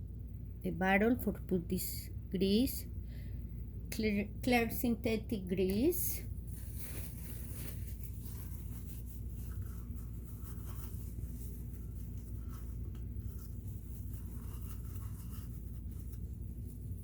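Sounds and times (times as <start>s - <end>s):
steady low hum: 0.0s - 17.0s
paper rubbing on metal gears: 6.7s - 17.0s.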